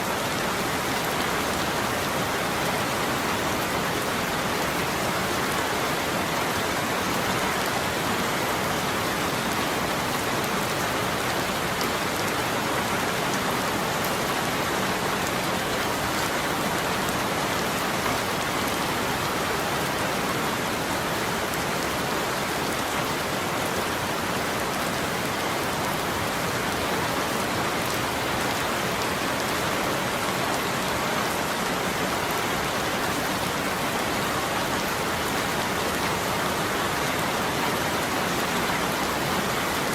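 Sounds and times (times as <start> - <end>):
steady rainfall: 0.0 - 39.9.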